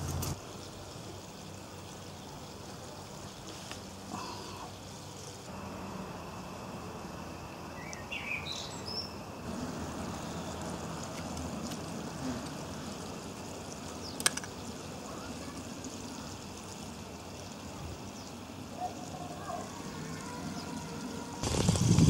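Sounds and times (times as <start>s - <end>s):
outdoor background noise: 0.0s - 22.0s
bird chirps: 7.8s - 9.2s.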